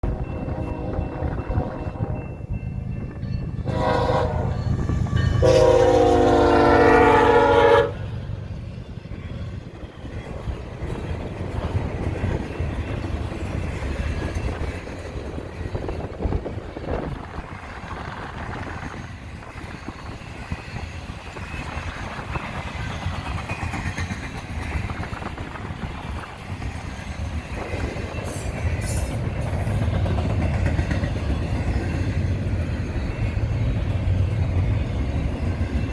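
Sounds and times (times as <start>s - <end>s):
train wheels rumbling on rail: 0.0s - 35.9s
locomotive horn blasts: 0.4s - 2.2s, 3.6s - 8.1s.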